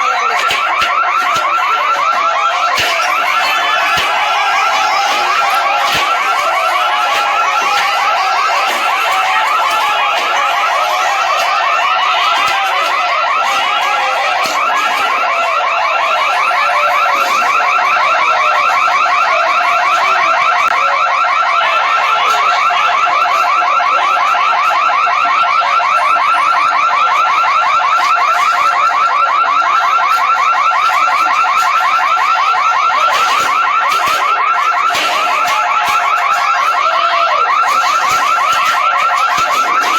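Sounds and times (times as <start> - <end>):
electronic alarm pulsing: 0.0 - 39.9.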